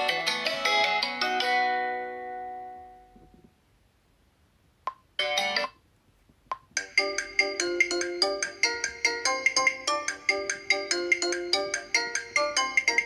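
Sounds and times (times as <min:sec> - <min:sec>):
phone ringtone melody: 0:05.2 - 0:05.7, 0:06.8 - 0:13.0.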